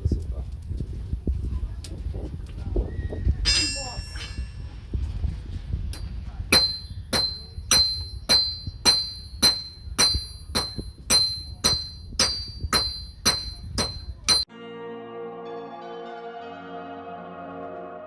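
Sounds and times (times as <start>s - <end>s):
hammer striking metal on anvil: 3.5s - 4.7s, 5.9s - 14.5s.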